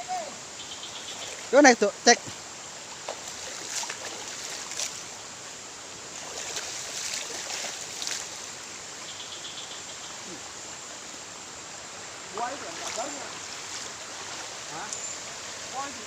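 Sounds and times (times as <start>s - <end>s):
flowing river water: 0.0s - 16.0s
light clicks or splashes: 3.0s - 5.0s.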